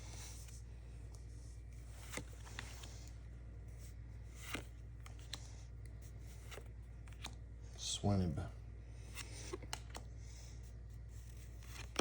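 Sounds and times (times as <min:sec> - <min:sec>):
steady low hum: 0:00.0 - 0:12.0
trading cards flipped through: 0:01.8 - 0:03.1, 0:04.3 - 0:07.4, 0:09.0 - 0:10.1, 0:11.2 - 0:12.0.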